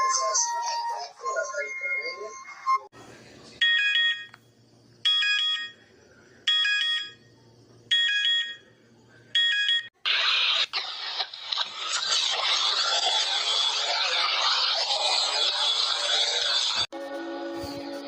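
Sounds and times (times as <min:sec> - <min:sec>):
electronic alarm beeps: 0:06.5 - 0:07.2, 0:07.9 - 0:08.6, 0:09.4 - 0:10.0
harsh static noise: 0:10.0 - 0:17.0.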